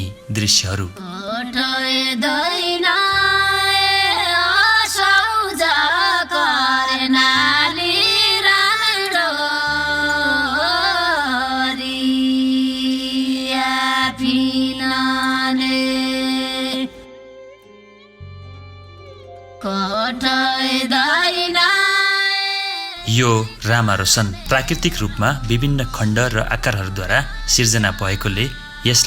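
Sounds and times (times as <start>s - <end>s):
woman singing ornamented melody: 1.0s - 17.2s, 19.6s - 29.0s
low bass notes: 23.0s - 29.0s
steady drone: 23.0s - 29.0s.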